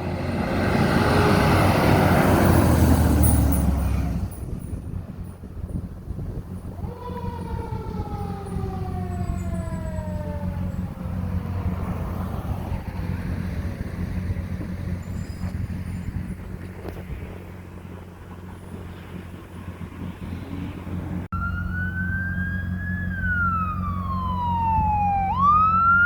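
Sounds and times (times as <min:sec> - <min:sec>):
fire truck siren: 0:00.0 - 0:03.9, 0:06.5 - 0:14.1, 0:21.3 - 0:26.0
vehicle engine droning: 0:00.0 - 0:26.0.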